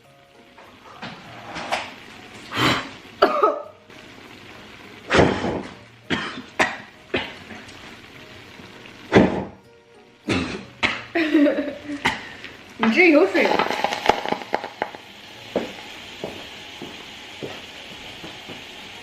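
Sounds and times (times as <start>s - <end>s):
woman coughing: 3.2s - 3.6s, 6.1s - 7.4s, 10.3s - 10.7s.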